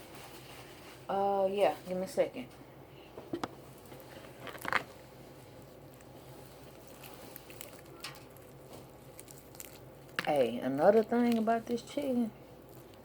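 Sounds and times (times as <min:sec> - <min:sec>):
food rustle: 0:03.7 - 0:13.0.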